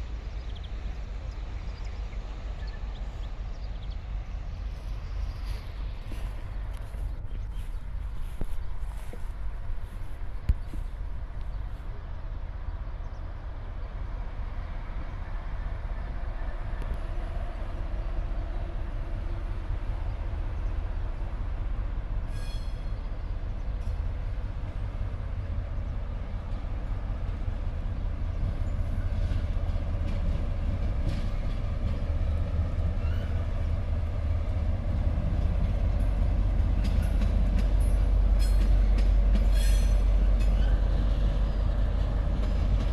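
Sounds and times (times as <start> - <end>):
train rumbling past: 0.0 - 42.9.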